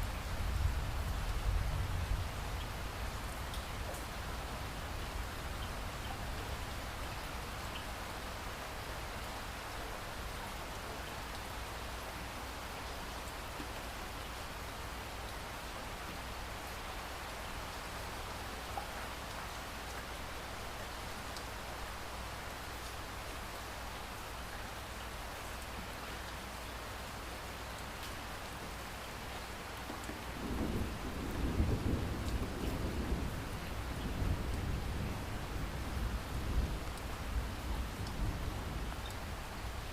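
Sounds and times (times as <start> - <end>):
heavy rain pouring: 0.0 - 39.9
thunder rumbling: 30.4 - 36.8
faint dripping ticks: 39.0 - 39.3.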